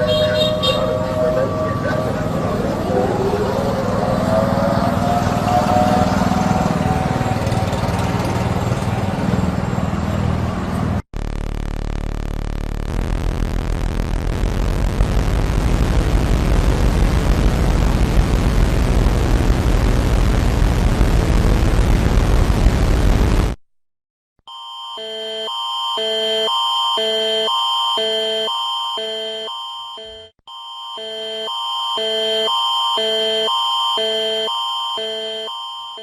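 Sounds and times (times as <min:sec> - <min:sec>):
harsh buzzing alarm: 0:00.0 - 0:08.2, 0:24.5 - 0:36.0.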